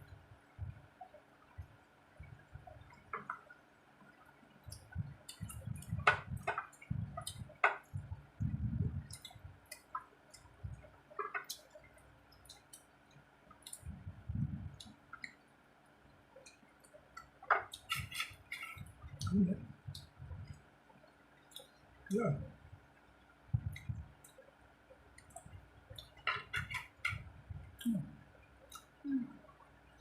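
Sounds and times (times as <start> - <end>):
dull low bumps: 4.7 - 9.6, 13.8 - 14.9, 18.8 - 20.6, 23.5 - 24.2, 27.1 - 27.8.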